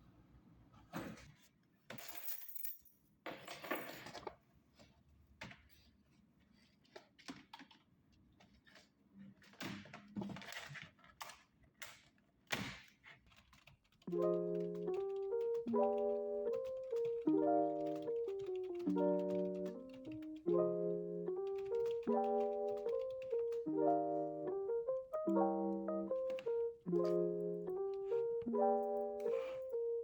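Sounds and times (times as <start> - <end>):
light piano music: 14.0 - 30.0.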